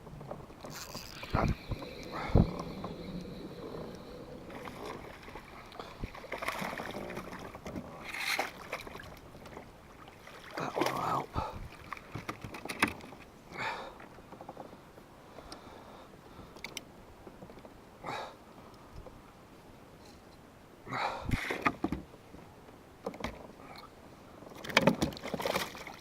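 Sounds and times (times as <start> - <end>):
water splashing and sloshing: 0.0 - 15.4, 21.3 - 26.0.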